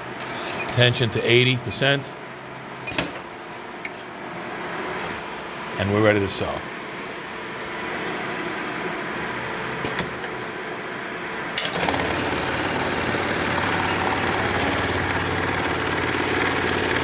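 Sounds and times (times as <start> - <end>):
sewing machine clicks: 11.6 - 17.0
sewing machine stitching rapidly: 11.6 - 17.0.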